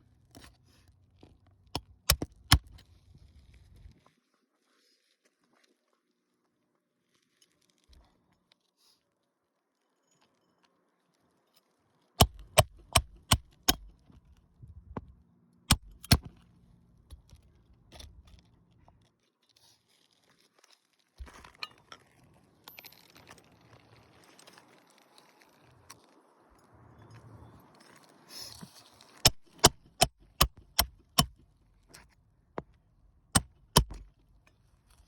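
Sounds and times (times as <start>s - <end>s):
hammer striking nails: 1.8s - 2.8s, 12.2s - 13.9s, 15.7s - 16.3s, 29.3s - 31.4s, 33.4s - 34.1s.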